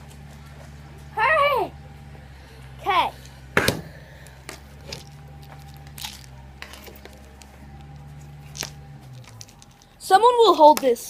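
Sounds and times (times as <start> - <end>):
steady low hum: 0.0 - 11.0
faint clicks and handling noises: 4.2 - 10.0.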